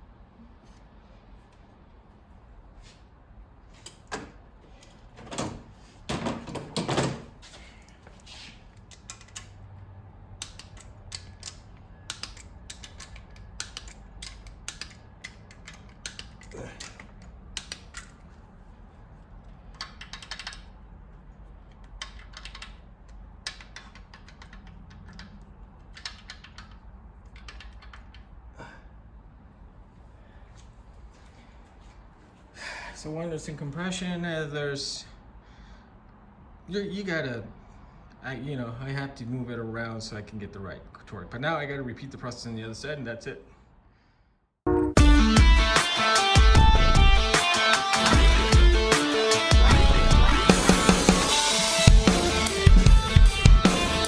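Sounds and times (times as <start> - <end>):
wrench and socket clicking: 8.8 - 9.6, 10.4 - 18.3.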